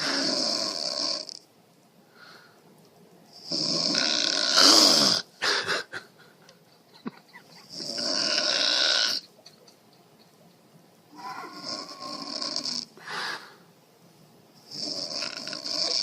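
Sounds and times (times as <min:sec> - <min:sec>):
woman snoring loudly: 0:00.0 - 0:01.4, 0:03.4 - 0:05.3, 0:07.7 - 0:09.2, 0:11.2 - 0:12.9, 0:14.7 - 0:16.0.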